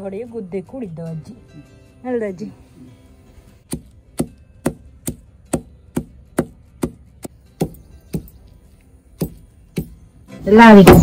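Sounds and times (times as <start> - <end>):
pounding plant stems: 3.7 - 8.6.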